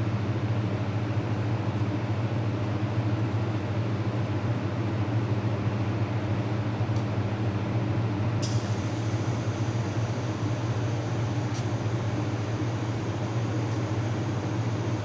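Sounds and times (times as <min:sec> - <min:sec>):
laser welding machine humming: 0:08.4 - 0:15.0.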